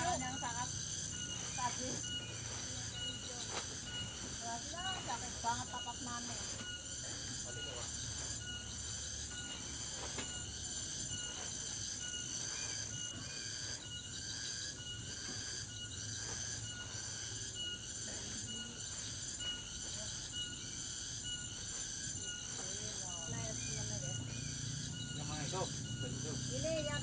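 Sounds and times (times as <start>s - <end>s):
rhythmic high-pitched chirping: 0.0s - 27.0s.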